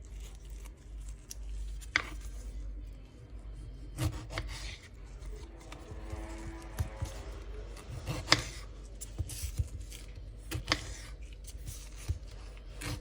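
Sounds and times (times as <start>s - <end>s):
steady low hum: 0.0s - 13.0s
utensils clicking and scraping: 4.0s - 13.0s.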